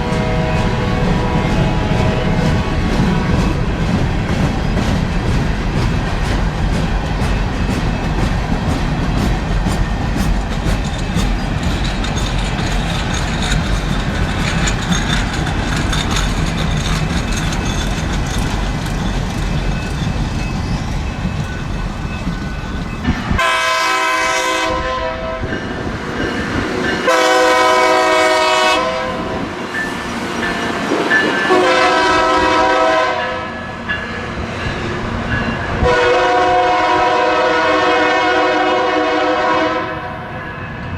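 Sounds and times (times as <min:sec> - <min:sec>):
locomotive air horn blasts: 0:00.0 - 0:03.3, 0:23.3 - 0:25.5, 0:27.1 - 0:29.4, 0:31.5 - 0:33.6, 0:35.8 - 0:40.3
train wheels clattering: 0:00.0 - 0:38.7.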